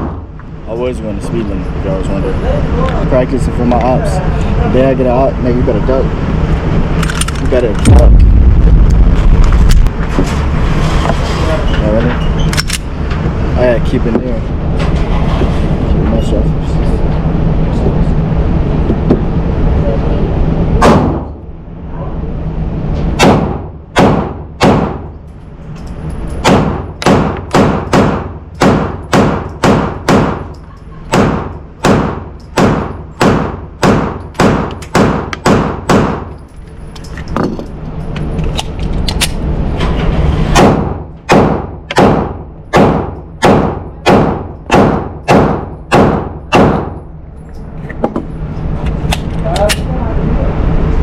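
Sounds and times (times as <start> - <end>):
pistol shots: 20.8 - 21.4, 23.2 - 25.1, 26.4 - 36.3, 40.6 - 47.0.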